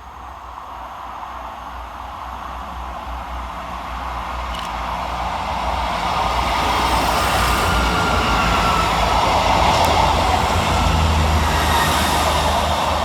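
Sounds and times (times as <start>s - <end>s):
train rumbling: 0.2s - 13.0s
low drone: 6.2s - 13.0s.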